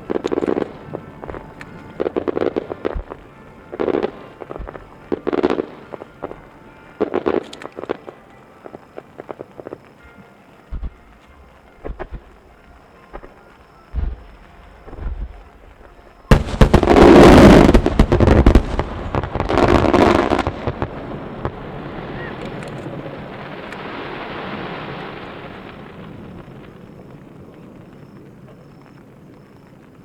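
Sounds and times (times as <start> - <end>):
fireworks bursting: 0.0 - 30.0.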